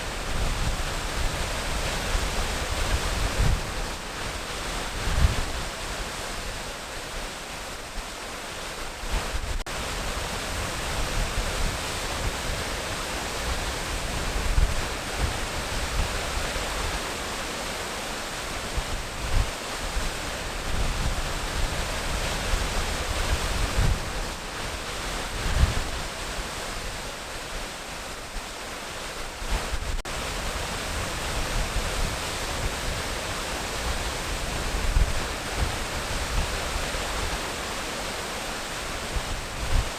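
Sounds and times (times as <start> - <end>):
wind buffeting microphone: 0.0 - 5.9, 18.6 - 27.0, 29.4 - 37.5
waterfall rushing: 0.0 - 39.9.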